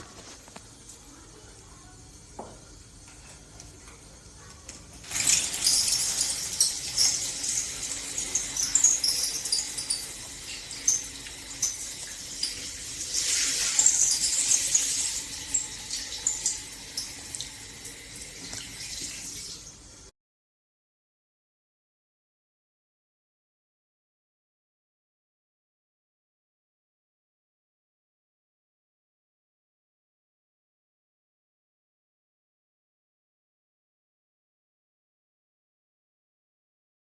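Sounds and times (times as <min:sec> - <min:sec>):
shower water spraying: 0:05.0 - 0:20.1.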